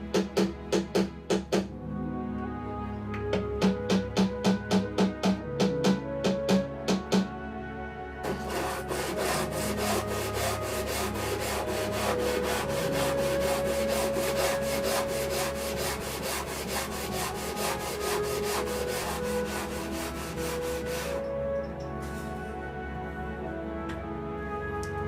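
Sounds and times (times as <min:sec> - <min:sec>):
background music: 0:00.0 - 0:25.0
hand sanding wood: 0:08.2 - 0:21.3.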